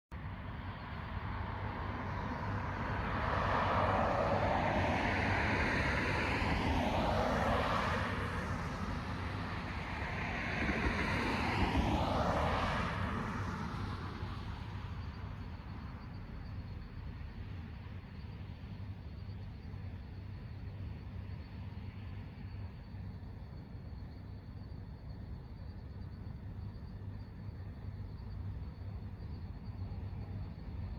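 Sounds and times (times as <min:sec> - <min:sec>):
cars passing: 0:00.8 - 0:15.1.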